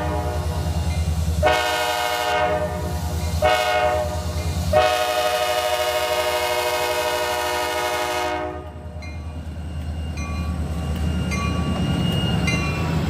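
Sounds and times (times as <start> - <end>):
locomotive air horn: 0.0 - 0.7, 1.4 - 8.8
locomotive engine rumble: 0.0 - 13.0
locomotive bell ringing: 0.6 - 1.2, 8.8 - 13.0.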